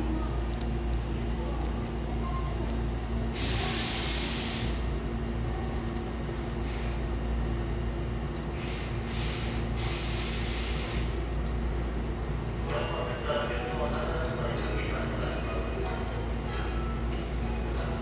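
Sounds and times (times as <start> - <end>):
train compressed-air hiss: 3.3 - 4.9, 6.5 - 7.2, 8.5 - 11.3.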